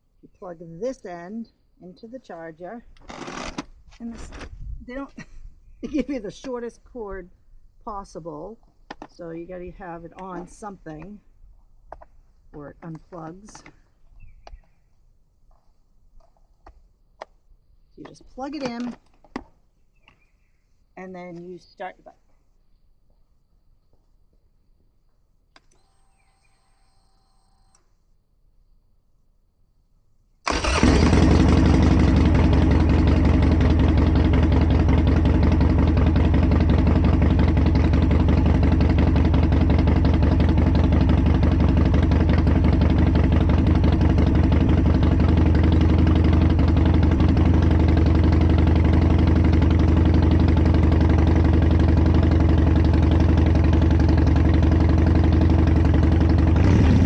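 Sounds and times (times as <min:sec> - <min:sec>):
motorcycle engine starting and idling: 0:02.3 - 0:05.2, 0:30.4 - 0:57.0.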